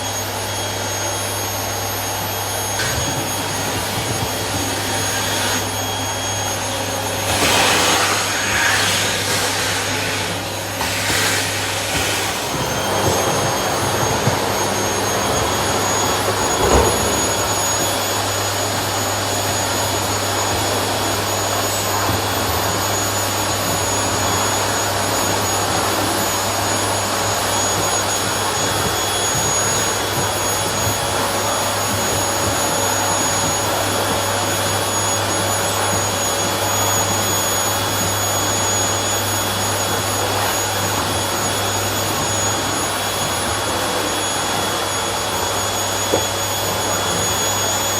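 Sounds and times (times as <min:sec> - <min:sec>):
vacuum cleaner running: 0:00.0 - 0:47.9.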